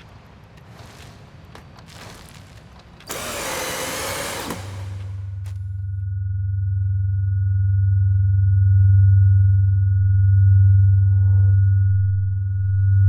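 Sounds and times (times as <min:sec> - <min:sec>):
deep electronic drone: 0:03.1 - 0:13.0.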